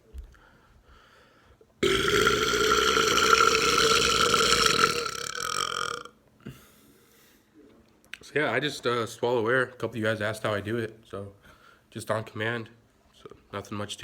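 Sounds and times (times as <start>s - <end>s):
man burping loudly: 1.8s - 6.2s.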